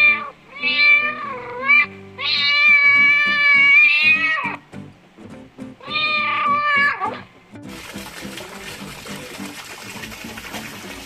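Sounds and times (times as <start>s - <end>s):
cat meowing: 0.0s - 4.6s, 5.8s - 7.3s
background music: 1.8s - 11.0s.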